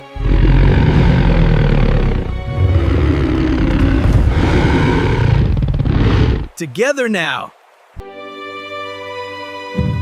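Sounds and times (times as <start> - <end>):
background music: 0.0 - 5.6, 6.6 - 10.0
rough low rumbling roar: 0.0 - 6.5.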